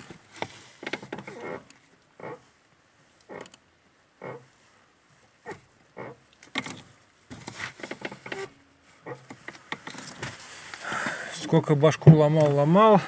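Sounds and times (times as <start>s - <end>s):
clutch pedal squeaking and creaking: 0.8s - 2.4s, 3.3s - 3.6s, 4.2s - 4.4s, 5.5s - 10.3s.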